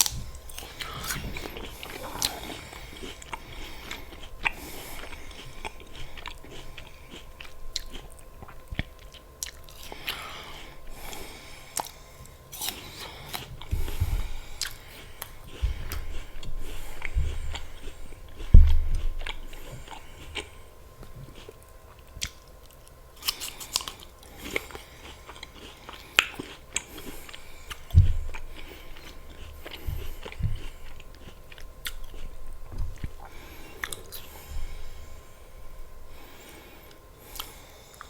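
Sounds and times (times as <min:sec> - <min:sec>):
wet mouth sounds: 0:00.0 - 0:12.0, 0:12.6 - 0:22.4
chewing crisp apple: 0:00.0 - 0:38.0
low thumps: 0:15.6 - 0:19.5, 0:27.9 - 0:28.7.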